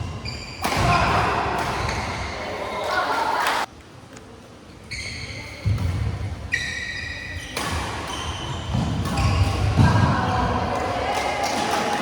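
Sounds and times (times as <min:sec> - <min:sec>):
sports shoes squeaking on court: 0:00.0 - 0:01.0, 0:04.8 - 0:10.8.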